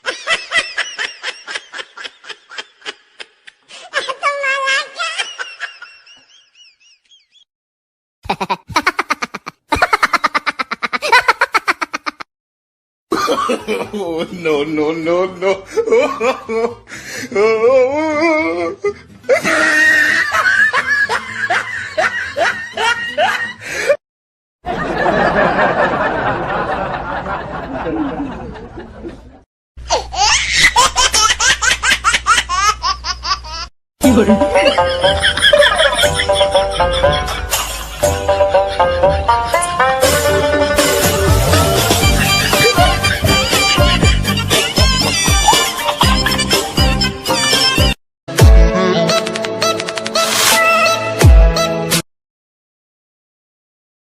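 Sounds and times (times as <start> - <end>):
snickering laugh: 0.0 - 4.2, 8.2 - 12.2, 30.2 - 38.0
wavering giggle: 8.2 - 12.2, 32.6 - 38.0, 40.4 - 46.8
dense laugh: 8.2 - 12.3, 15.1 - 17.1, 24.7 - 29.4, 34.0 - 44.7
high-pitched held laugh: 8.2 - 12.3, 19.3 - 23.6, 29.9 - 47.6.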